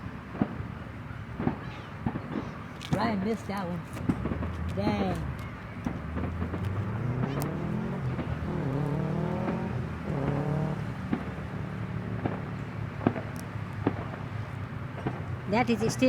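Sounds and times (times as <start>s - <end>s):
sharp pops: 1.4s - 15.8s
vehicle engine accelerating: 4.1s - 14.2s.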